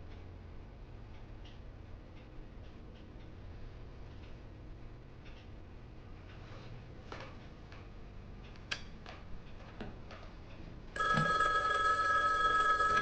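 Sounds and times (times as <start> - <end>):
telephone ringing: 11.0 - 13.0.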